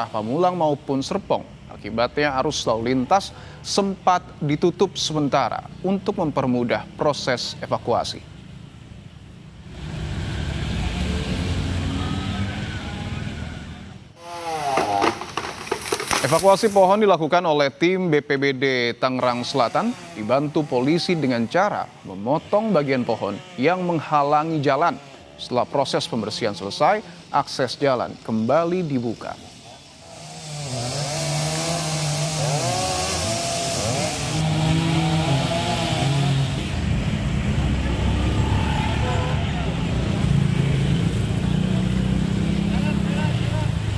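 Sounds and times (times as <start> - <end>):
chainsaw cutting wood: 14.2 - 17.0, 19.2 - 28.6, 29.2 - 37.0
person speaking: 14.2 - 17.1.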